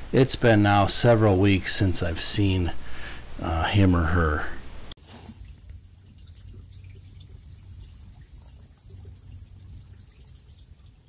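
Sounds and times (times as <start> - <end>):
small water drips: 5.0 - 11.0
water trickling: 5.0 - 11.0.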